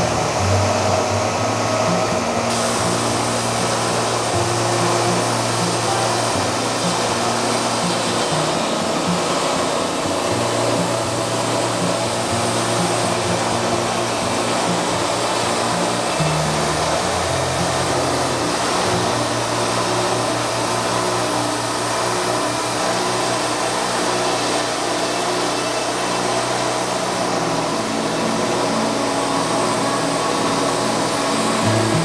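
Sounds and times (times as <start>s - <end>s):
band saw cutting: 0.0s - 32.0s.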